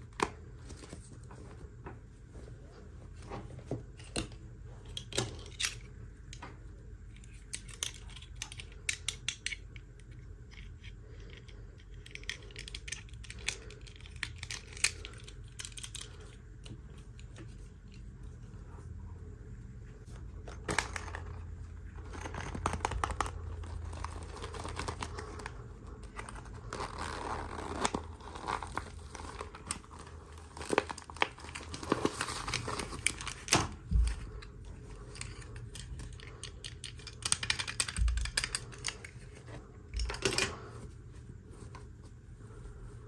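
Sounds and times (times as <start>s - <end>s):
packaging crinkling and tearing: 22.0s - 34.4s.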